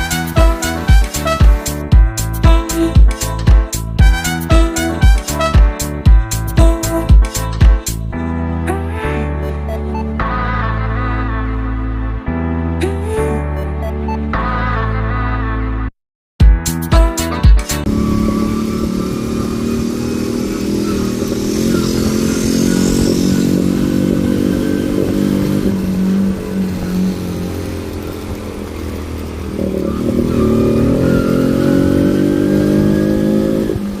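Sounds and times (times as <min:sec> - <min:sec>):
small motorcycle engine running: 0:17.8 - 0:34.0.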